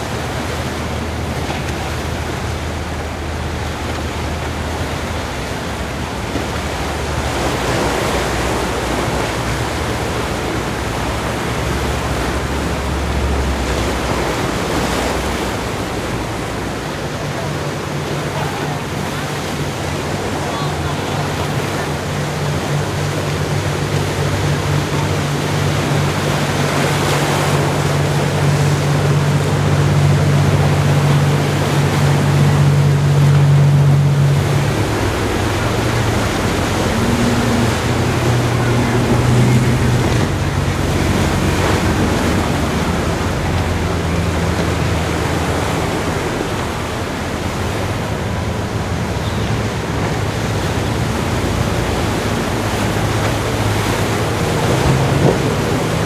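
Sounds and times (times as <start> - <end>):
ocean surf breaking: 0.0 - 56.0
wind buffeting microphone: 0.0 - 56.0
low hum: 20.9 - 56.0.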